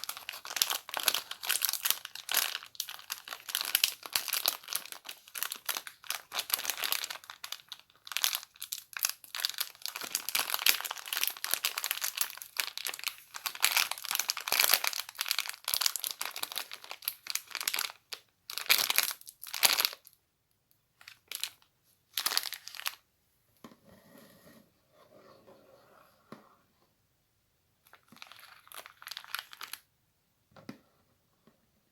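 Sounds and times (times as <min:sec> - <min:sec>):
crinkly material rustling: 0:00.0 - 0:20.2, 0:21.0 - 0:23.0, 0:27.8 - 0:29.9.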